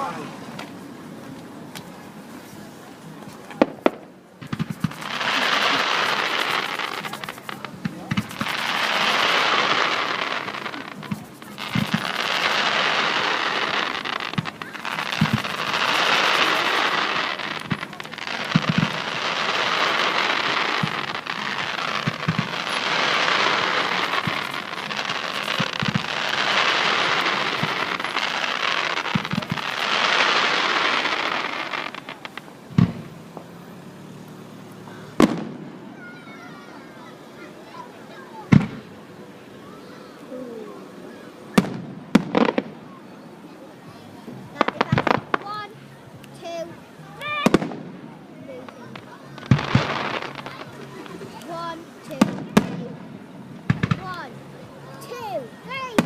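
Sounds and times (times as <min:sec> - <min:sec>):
fireworks bangs: 0:00.0 - 0:43.2, 0:43.8 - 0:56.0
fireworks hissing and crackling: 0:00.0 - 0:56.0
fireworks thumps: 0:03.2 - 0:33.5, 0:38.5 - 0:38.9, 0:53.6 - 0:54.2.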